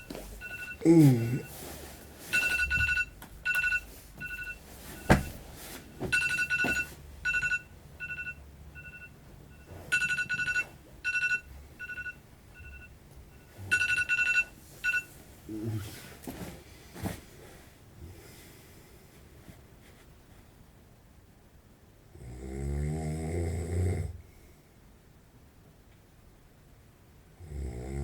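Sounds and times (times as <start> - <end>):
phone alarm two-tone beeps: 0.0 - 1.5, 2.3 - 5.4, 6.1 - 15.1.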